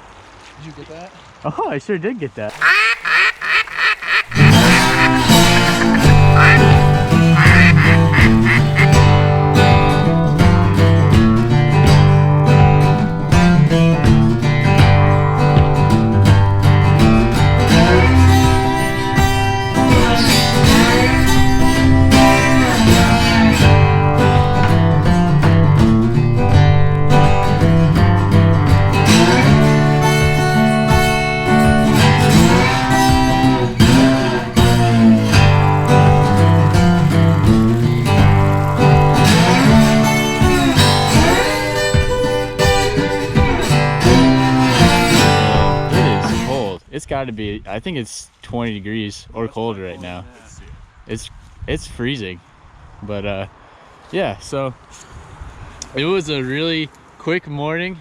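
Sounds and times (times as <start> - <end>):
bass: 2.5 - 46.8
strummed acoustic guitar: 4.3 - 46.7.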